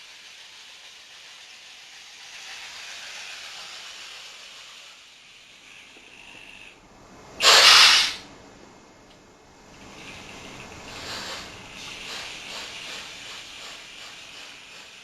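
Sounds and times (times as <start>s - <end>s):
electronic steam hiss: 7.4s - 8.2s, 9.7s - 15.0s
sharp burst of hiss: 7.4s - 8.2s, 9.8s - 15.0s.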